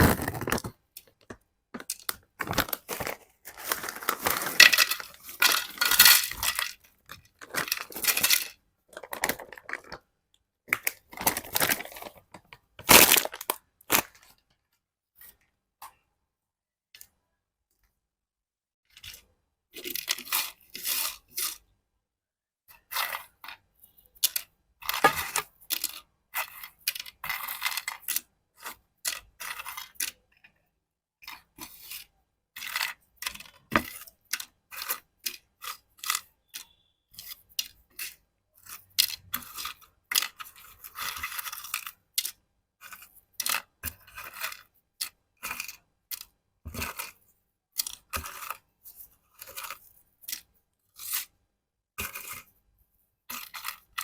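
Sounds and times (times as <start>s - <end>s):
plastic snack packet crinkling: 0.0s - 10.0s, 10.7s - 14.3s.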